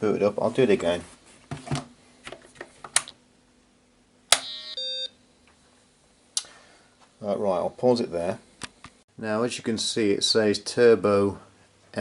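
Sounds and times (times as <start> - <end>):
computer start-up beep: 4.4 - 5.2.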